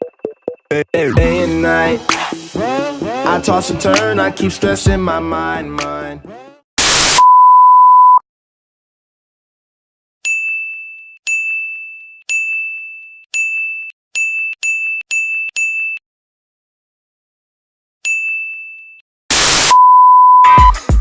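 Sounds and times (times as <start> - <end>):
steady electronic beep: 19.7 - 20.8.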